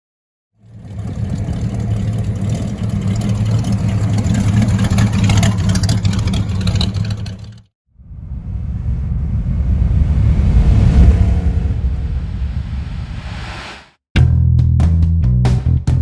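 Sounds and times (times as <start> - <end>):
car engine running: 0.6 - 7.7.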